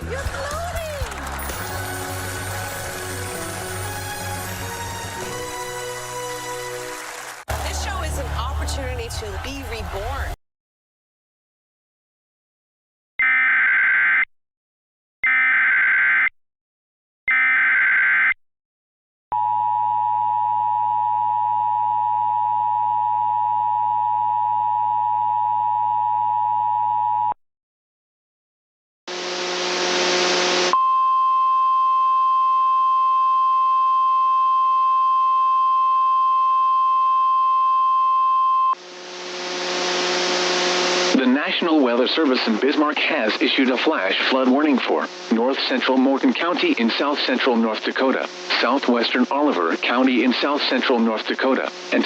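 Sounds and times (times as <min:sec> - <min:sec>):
radio static: 0:29.1 - 0:30.7, 0:38.8 - 0:52.0.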